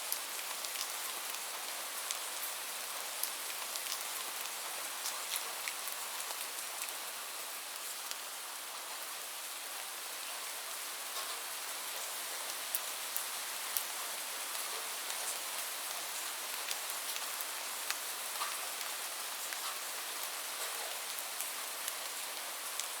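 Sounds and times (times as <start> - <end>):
light rain hissing: 0.0 - 23.0
raindrops ticking on a surface: 0.1 - 9.0, 9.8 - 23.0.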